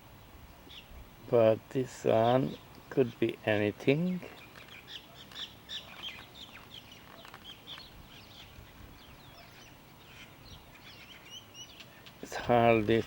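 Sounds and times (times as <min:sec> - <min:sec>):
birds chirping faintly: 0:00.0 - 0:13.0.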